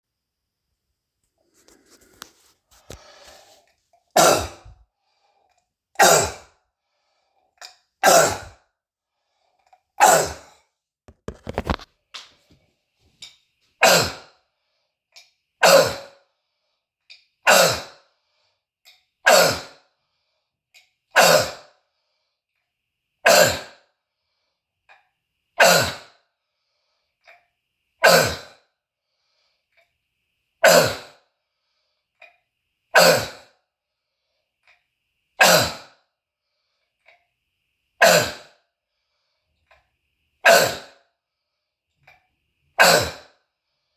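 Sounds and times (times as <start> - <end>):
man coughing harshly: 4.2 - 4.8, 6.0 - 6.5, 8.0 - 8.6.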